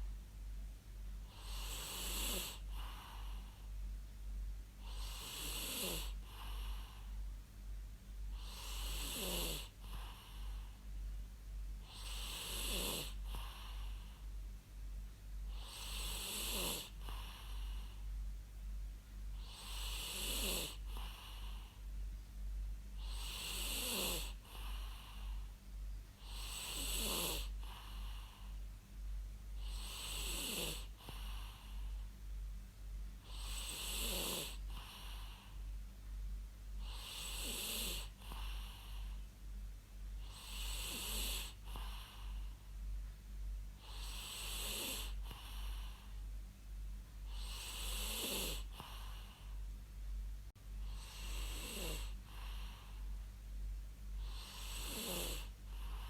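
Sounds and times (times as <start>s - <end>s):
steady low hum: 0.0s - 56.0s
person snoring: 1.3s - 3.5s, 4.8s - 7.0s, 8.4s - 10.6s, 11.9s - 14.0s, 15.5s - 18.0s, 19.4s - 21.6s, 23.0s - 25.4s, 26.2s - 28.5s, 29.6s - 31.8s, 33.2s - 35.5s, 36.8s - 39.1s, 40.2s - 42.4s, 43.8s - 46.0s, 47.3s - 49.4s, 50.9s - 53.0s, 54.2s - 56.0s.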